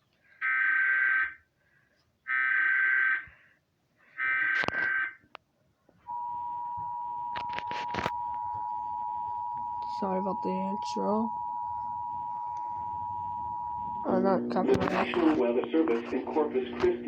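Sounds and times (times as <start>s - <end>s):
two-tone attention signal: 6.1s - 15.2s.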